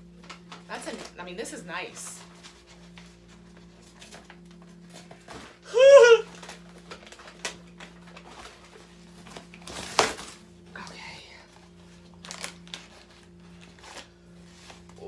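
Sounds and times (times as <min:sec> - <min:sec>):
packaging clicks and rustles: 0:06.3 - 0:10.4, 0:11.9 - 0:15.0.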